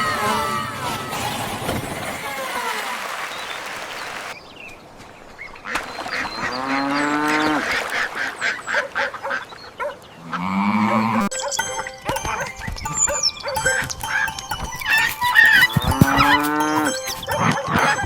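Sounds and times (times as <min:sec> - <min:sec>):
clicks: 0:11.3 - 0:18.0
cartoon farm animal calls: 0:14.9 - 0:18.0.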